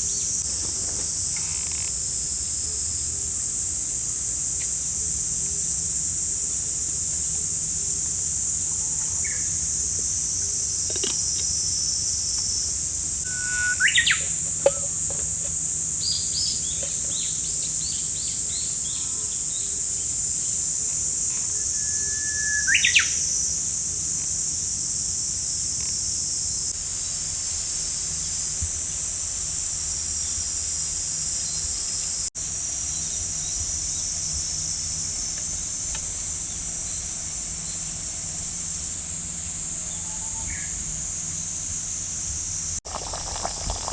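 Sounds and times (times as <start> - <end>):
high-pitched insect drone: 13.0 - 16.6
upward sweeping whistle: 13.3 - 14.0.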